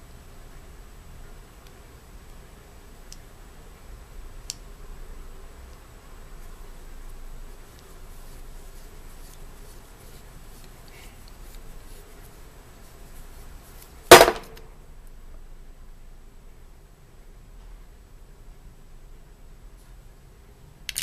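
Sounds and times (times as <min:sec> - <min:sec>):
faint background noise: 0:00.0 - 0:21.0
sharp bang: 0:14.1 - 0:14.7.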